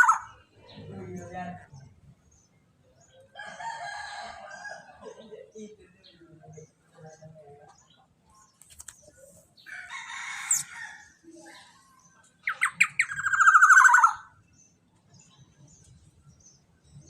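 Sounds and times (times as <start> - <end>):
bird harsh rasping calls: 0.0 - 0.5, 9.7 - 10.8, 12.4 - 14.4.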